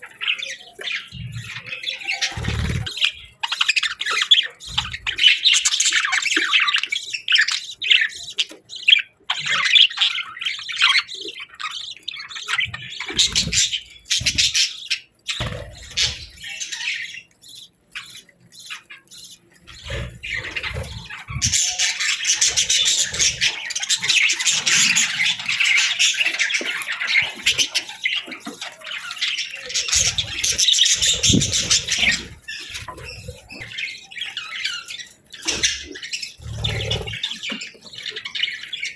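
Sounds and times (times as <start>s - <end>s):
budgerigars chattering and squawking: 0.0s - 38.9s.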